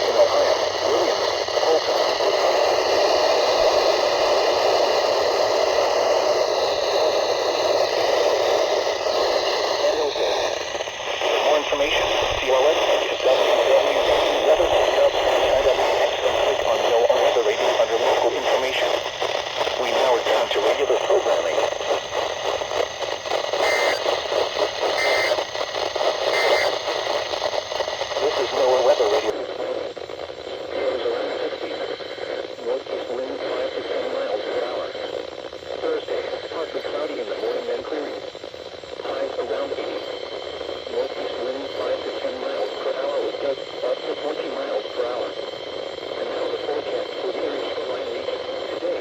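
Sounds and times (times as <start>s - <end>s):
buzzy two-tone data screeches: 0.0s - 29.3s
radio static hiss: 0.0s - 49.0s.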